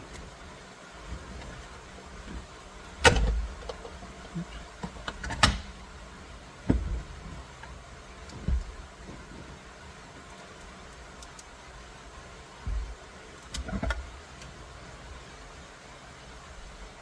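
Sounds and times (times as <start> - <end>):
sharp knocks and clunks: 2.3 - 4.0, 6.6 - 7.3, 8.3 - 9.2.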